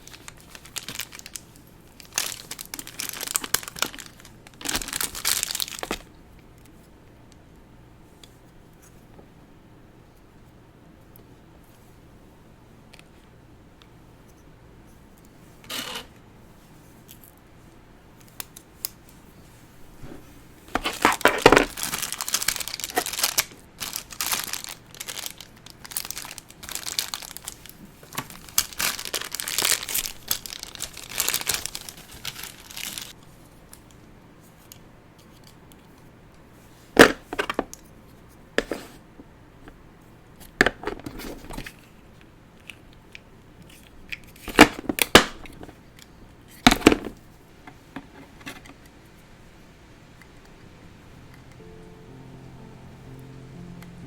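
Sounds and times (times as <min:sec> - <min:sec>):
packaging crinkling and tearing: 0:00.0 - 0:06.1, 0:20.8 - 0:33.2.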